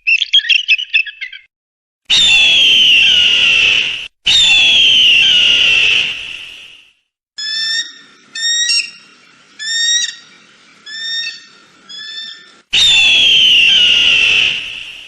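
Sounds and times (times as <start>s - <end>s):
eagle scream: 2.1s - 6.2s, 10.9s - 15.0s
eagle piping notes: 7.4s - 12.6s.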